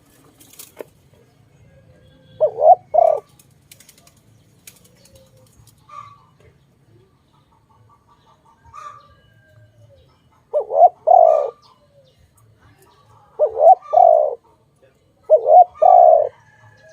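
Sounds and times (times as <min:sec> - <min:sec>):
birds chirping: 0:00.0 - 0:16.9
dove cooing: 0:01.2 - 0:03.4, 0:04.8 - 0:06.4, 0:08.6 - 0:12.1, 0:13.4 - 0:14.4, 0:15.3 - 0:16.9.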